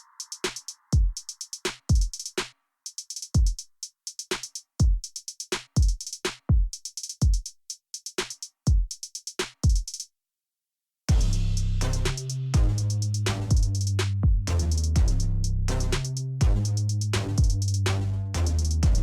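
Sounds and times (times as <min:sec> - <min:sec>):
drum machine beat: 0:00.0 - 0:10.0, 0:11.1 - 0:19.0
hi-hat ticks: 0:00.0 - 0:10.0, 0:11.2 - 0:19.0
steady bass line: 0:11.1 - 0:19.0.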